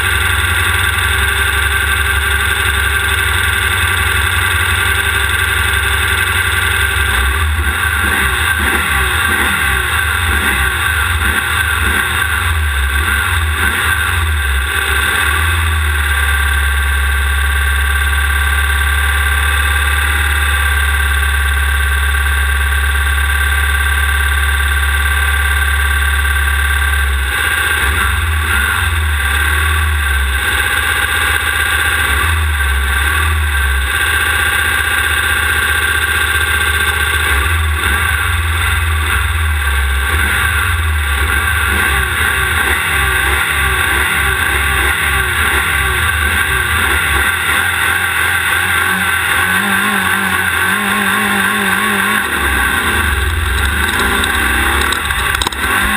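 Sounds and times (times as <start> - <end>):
race car engine revving: 0.0 - 21.3, 25.5 - 55.9
steady noisy rush: 40.6 - 55.9.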